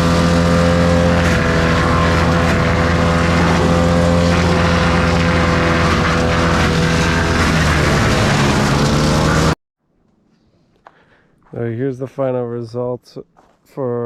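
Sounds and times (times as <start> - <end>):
small petrol engine running: 0.0 - 9.6.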